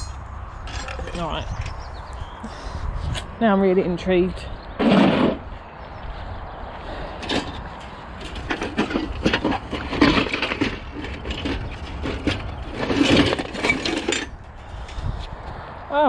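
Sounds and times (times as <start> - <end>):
hands rummaging through scrap metal: 0.7 - 1.4, 7.2 - 14.5.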